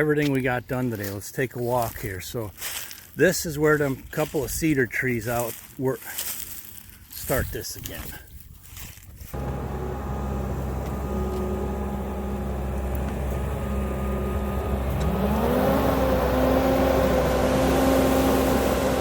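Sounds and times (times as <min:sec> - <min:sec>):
diesel engine revving up: 0:09.3 - 0:19.0.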